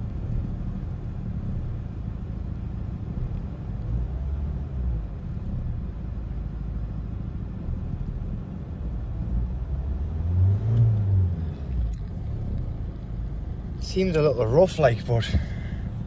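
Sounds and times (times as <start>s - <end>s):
engine revving: 9.2s - 12.7s
diesel engine idling: 11.5s - 16.0s.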